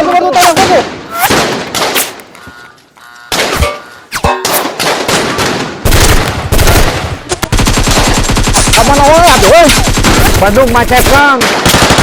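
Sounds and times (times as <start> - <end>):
gunshots: 0.3 - 2.2, 3.3 - 12.0
rapid automatic gunfire: 4.8 - 12.0.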